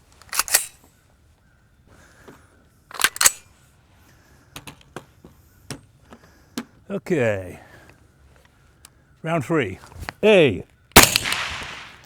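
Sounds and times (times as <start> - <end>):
suppressed rifle shots: 11.0 - 12.0.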